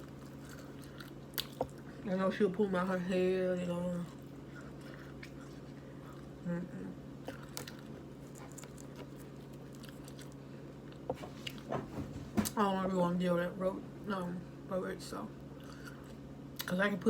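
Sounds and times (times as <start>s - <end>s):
chewing food: 0.0s - 2.1s, 4.0s - 6.4s, 7.2s - 11.7s
steady low hum: 0.0s - 17.0s.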